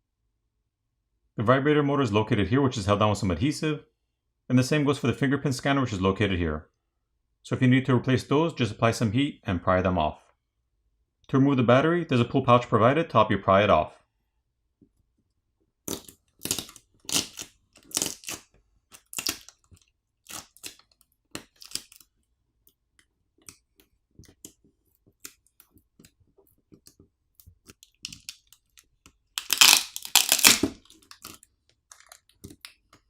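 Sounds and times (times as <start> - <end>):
adhesive crackling and tearing: 15.8 - 22.2, 23.4 - 33.0.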